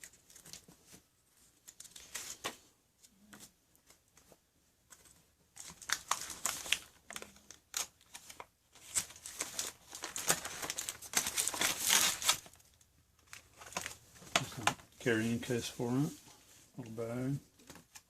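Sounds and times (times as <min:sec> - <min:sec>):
packaging crinkling: 0:05.6 - 0:14.8.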